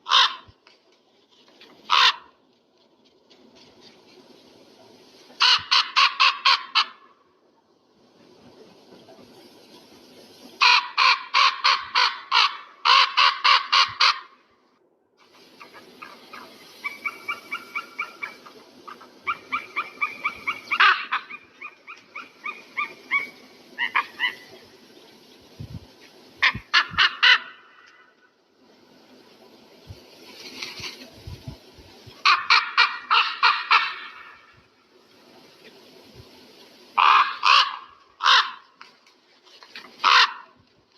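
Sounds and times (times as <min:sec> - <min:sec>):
large bird harsh calls: 0:15.2 - 0:24.9, 0:37.0 - 0:38.7, 0:40.0 - 0:40.5
bird chattering: 0:15.5 - 0:24.6.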